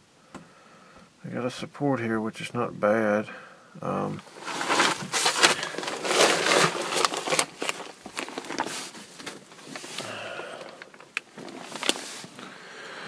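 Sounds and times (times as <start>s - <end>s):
rustling handling noise: 4.0s - 12.5s.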